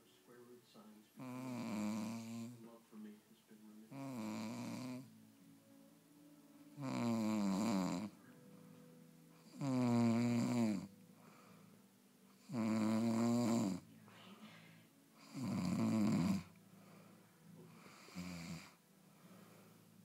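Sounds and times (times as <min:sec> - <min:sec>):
person snoring loudly: 0:01.2 - 0:02.6, 0:03.9 - 0:05.1, 0:06.8 - 0:08.2, 0:09.4 - 0:10.9, 0:12.4 - 0:13.8, 0:15.2 - 0:16.5, 0:17.7 - 0:18.8.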